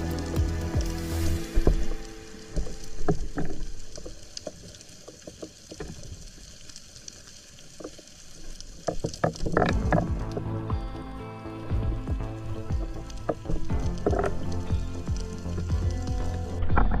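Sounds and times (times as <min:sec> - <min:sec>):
underwater ambience: 0:00.0 - 0:17.0
clicks and crackles: 0:01.6 - 0:10.6, 0:11.9 - 0:17.0.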